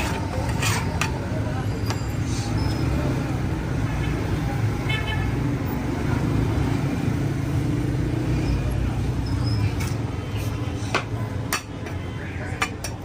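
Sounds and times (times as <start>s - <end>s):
street traffic rumble: 0.0s - 13.0s
metal dishes clinking: 11.5s - 13.0s.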